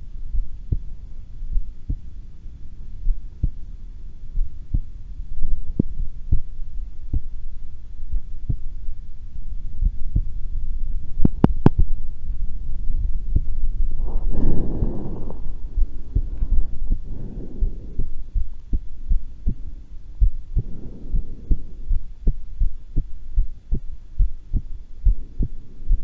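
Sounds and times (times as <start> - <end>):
heartbeat thumps: 0.0 - 2.3, 3.0 - 26.0
low rumble: 0.0 - 26.0.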